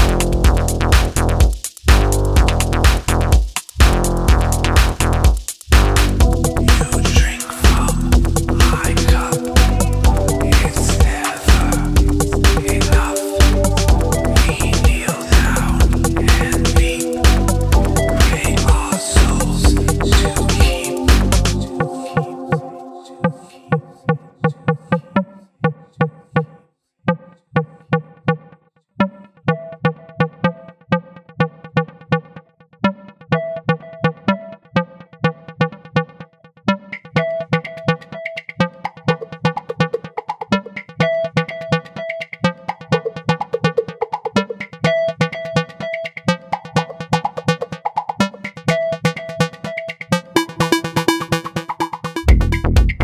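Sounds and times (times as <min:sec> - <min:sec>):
heavy bass: 0:00.0 - 0:21.8, 0:52.2 - 0:53.0
electronic music with plucked synth: 0:00.0 - 0:26.2, 0:27.1 - 0:53.0.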